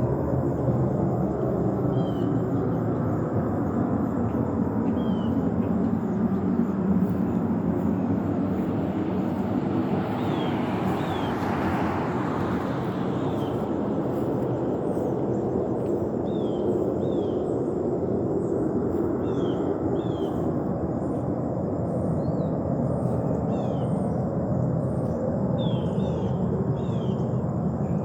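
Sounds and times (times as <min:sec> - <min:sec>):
passing vehicle hiss: 0:08.6 - 0:15.1.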